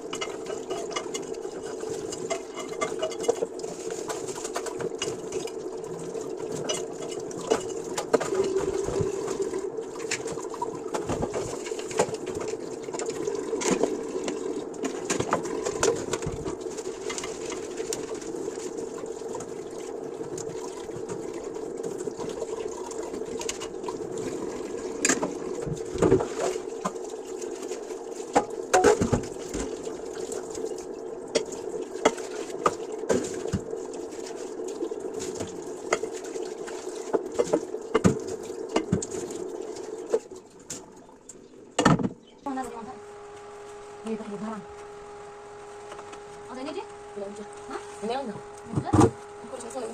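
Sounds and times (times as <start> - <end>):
dishes and pans clinking: 2.1 - 3.6.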